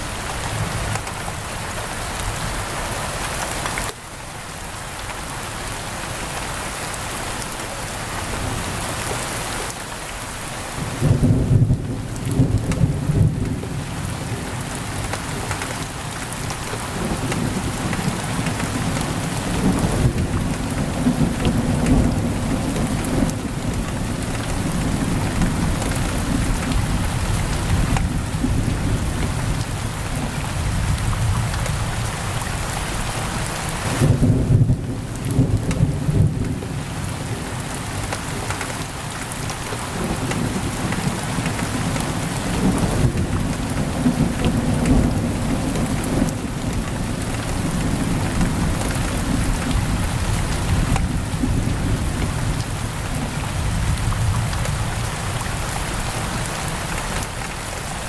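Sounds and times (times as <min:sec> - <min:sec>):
heavy rain on a window: 0:00.0 - 0:58.0
low rolling thunder: 0:10.8 - 0:15.0, 0:16.7 - 0:32.2, 0:33.9 - 0:37.6, 0:39.9 - 0:55.2.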